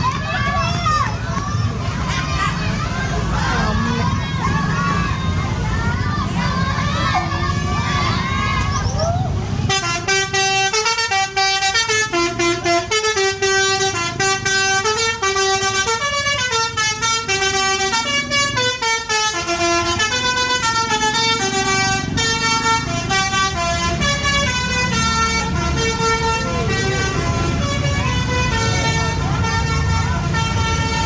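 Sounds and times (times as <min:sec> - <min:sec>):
bus rumble: 0:00.0 - 0:31.0
multi-tone bus horn tune: 0:09.6 - 0:31.0.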